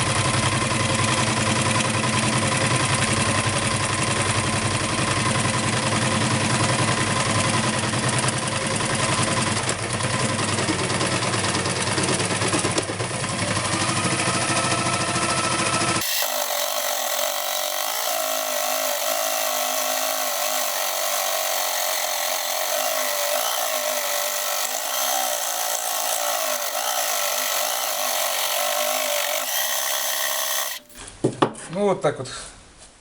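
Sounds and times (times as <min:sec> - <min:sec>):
scroll saw cutting wood: 0:13.4 - 0:31.0.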